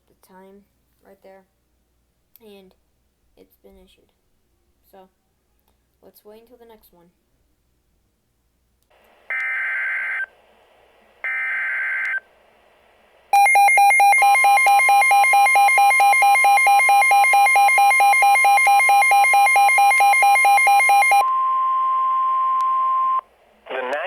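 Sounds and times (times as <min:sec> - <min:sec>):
rapid pulsing alarm beep: 0:13.4 - 0:23.2.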